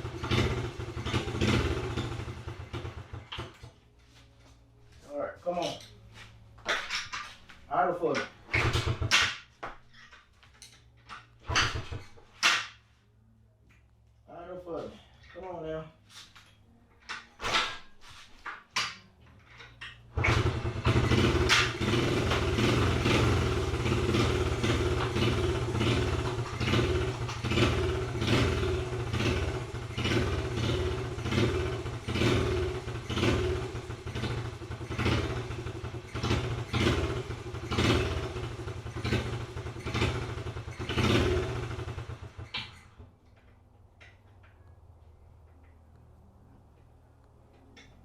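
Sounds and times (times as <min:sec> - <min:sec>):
small engine revving: 0:00.0 - 0:03.6, 0:20.2 - 0:43.0.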